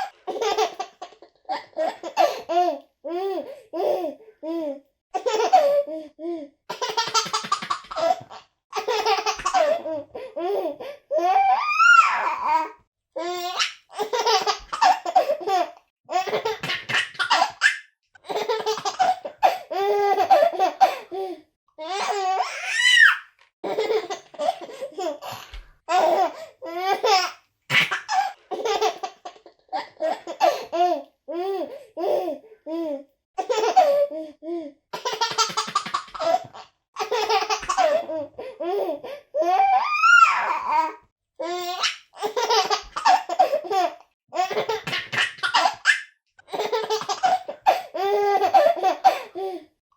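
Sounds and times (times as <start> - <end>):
baby laughing: 0.0 - 4.2, 5.2 - 5.8, 6.7 - 12.6, 13.2 - 21.1, 21.8 - 32.4, 33.4 - 34.1, 35.0 - 40.9, 41.5 - 49.4
baby squealing: 11.2 - 13.8, 21.8 - 23.4, 39.4 - 42.0.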